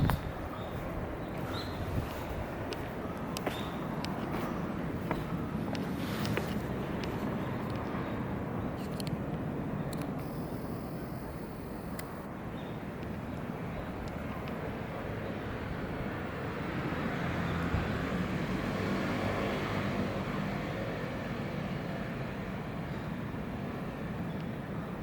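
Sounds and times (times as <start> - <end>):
passing vehicle engine: 16.3 - 22.1.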